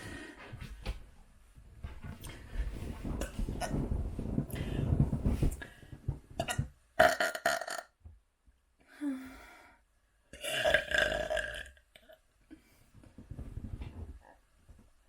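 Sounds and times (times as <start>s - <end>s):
person burping: 6.4s - 7.9s, 10.4s - 12.2s.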